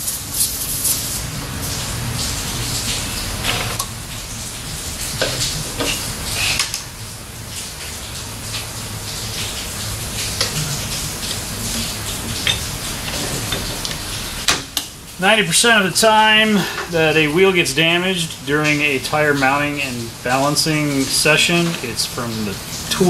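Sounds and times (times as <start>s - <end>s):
low machine hum: 0.0s - 23.0s
metal tools clanking: 12.4s - 13.9s.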